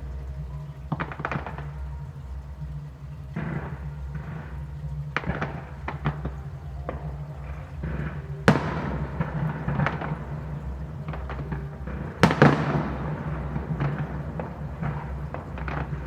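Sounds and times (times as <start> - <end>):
fireworks cracking and popping: 3.4 - 16.0
loud firework bangs: 5.2 - 16.0.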